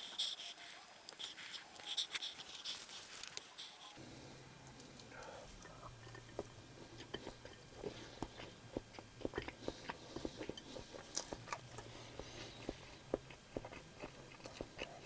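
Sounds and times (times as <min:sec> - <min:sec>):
person chewing food: 0:06.2 - 0:15.0.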